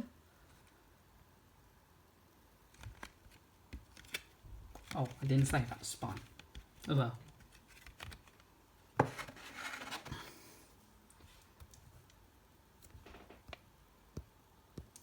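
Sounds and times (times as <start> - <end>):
rustling scrape: 9.0 - 10.2.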